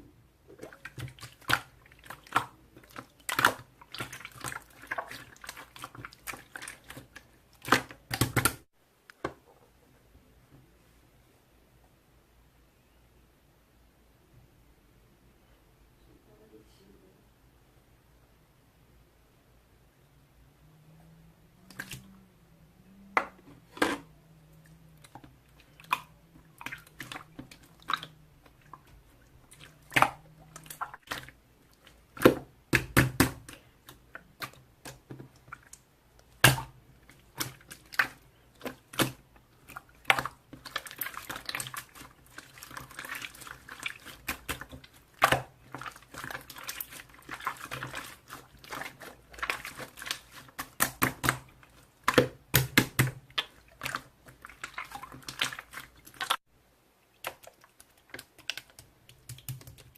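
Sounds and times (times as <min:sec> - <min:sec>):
faint low hum: 0:08.8 - 0:32.8.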